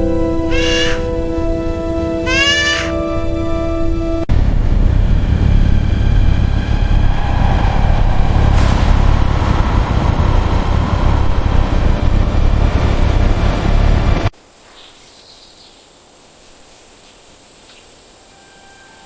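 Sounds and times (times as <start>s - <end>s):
loud low rumble: 4.3s - 14.3s
sharp crack: 6.6s - 14.3s.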